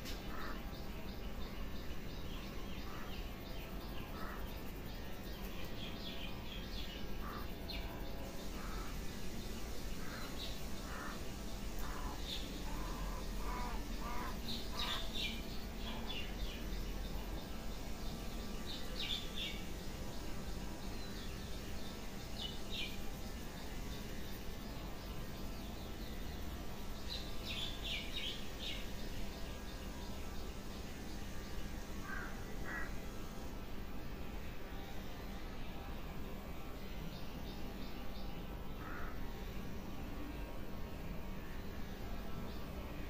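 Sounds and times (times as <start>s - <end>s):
birds chirping: 0.0s - 33.4s
steady background hiss: 0.0s - 43.0s
crows cawing: 10.1s - 11.2s, 32.0s - 33.0s, 38.8s - 39.2s.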